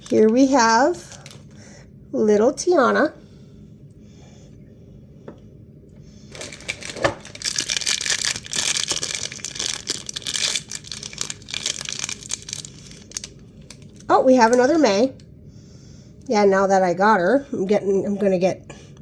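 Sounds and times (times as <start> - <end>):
plastic packaging crinkling: 0.0 - 1.6, 6.3 - 14.9.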